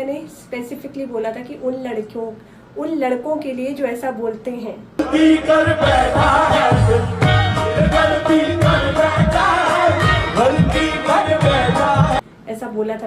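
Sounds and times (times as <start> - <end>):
indian-style music with singing: 5.0 - 12.2
steady drum beat: 5.0 - 12.2.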